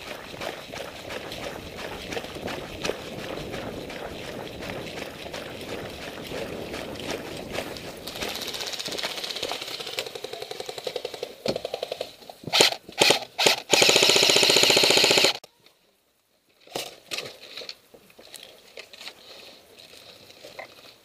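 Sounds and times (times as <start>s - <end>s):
airsoft gun firing bursts: 12.5s - 15.4s.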